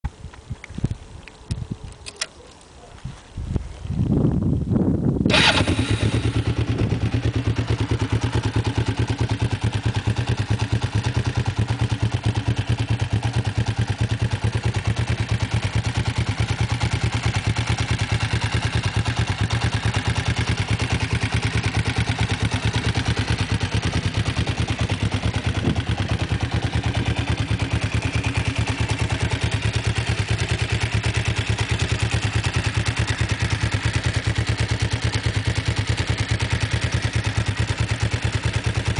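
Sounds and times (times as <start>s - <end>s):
motorcycle engine idling: 5.2s - 38.9s.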